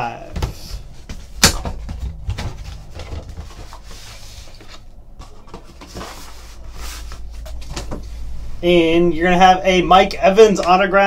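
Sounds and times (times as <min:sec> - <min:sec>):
packaging rustling: 0:00.7 - 0:08.2.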